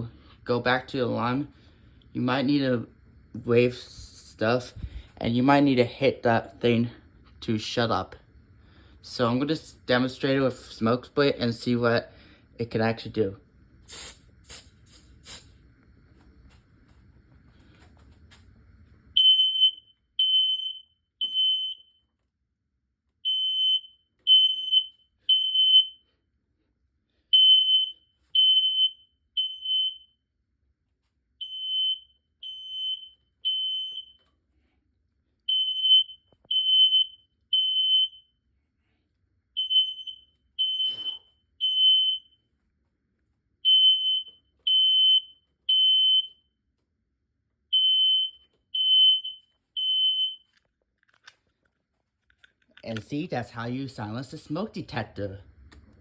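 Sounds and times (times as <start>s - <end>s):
smoke detector alarm beeping: 19.1s - 22.1s, 23.2s - 26.1s, 27.3s - 30.2s, 31.4s - 34.3s, 35.5s - 38.4s, 39.5s - 42.5s, 43.6s - 46.5s, 47.7s - 50.5s.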